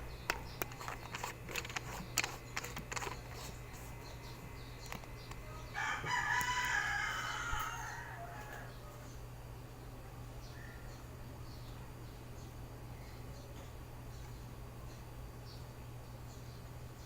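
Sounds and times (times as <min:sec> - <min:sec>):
clicks and taps handling memory module: 0:00.0 - 0:03.9
low steady hum: 0:00.0 - 0:17.0.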